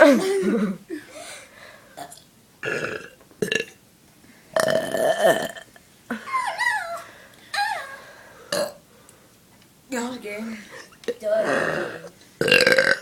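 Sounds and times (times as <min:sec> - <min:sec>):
person burping: 0:02.0 - 0:03.8, 0:04.6 - 0:05.7, 0:08.5 - 0:08.8, 0:11.2 - 0:13.0.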